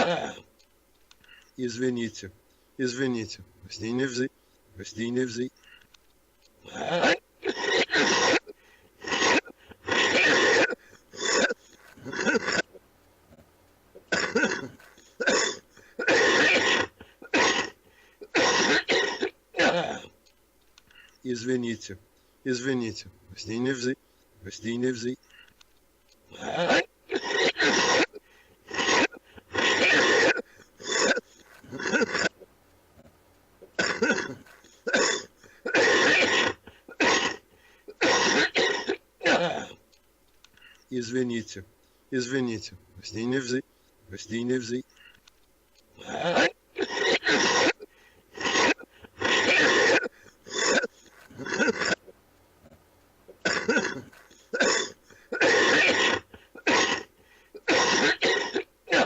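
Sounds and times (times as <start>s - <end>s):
man coughing harshly: 0.0s - 0.4s, 6.6s - 12.6s, 14.1s - 20.1s, 26.3s - 32.3s, 33.8s - 39.8s, 46.0s - 52.0s, 53.4s - 59.0s.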